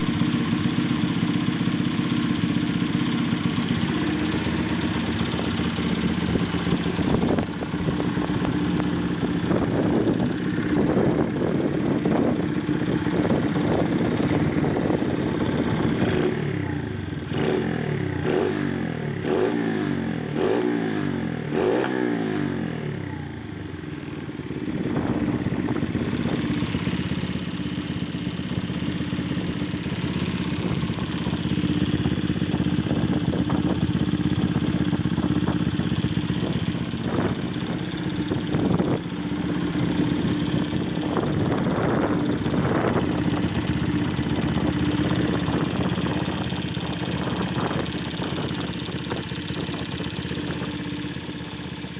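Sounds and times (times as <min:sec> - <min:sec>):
small motorcycle engine revving: 0:03.2 - 0:23.6, 0:29.4 - 0:51.9.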